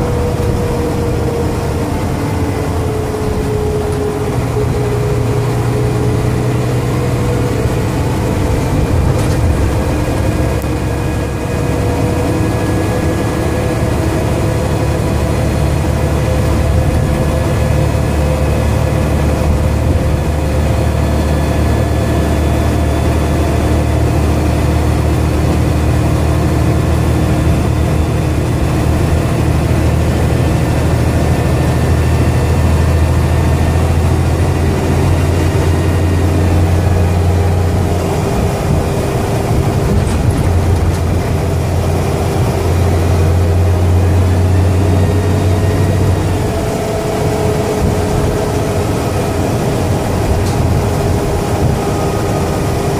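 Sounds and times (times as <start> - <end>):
bus diesel engine drone: 0.0 - 52.9
high turbo whine: 0.0 - 52.9.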